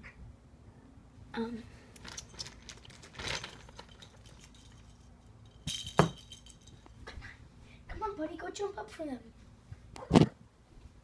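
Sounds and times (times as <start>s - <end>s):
rustling: 1.8s - 7.0s
cat toys jingling: 2.0s - 7.0s.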